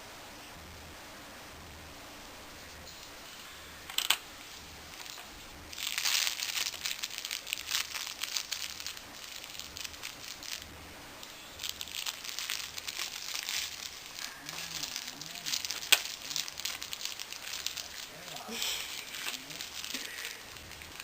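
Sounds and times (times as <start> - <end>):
book crinkling and rustling: 5.8 - 21.0.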